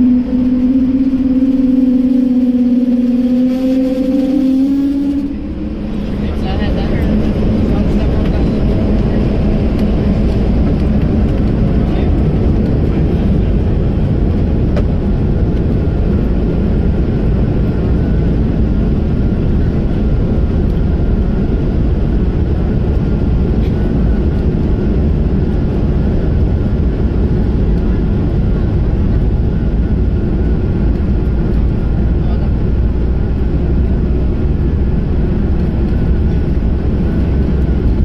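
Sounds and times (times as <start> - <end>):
deep rush of engine and airflow: 0.0 - 38.0
faint steady whine: 0.0 - 38.0.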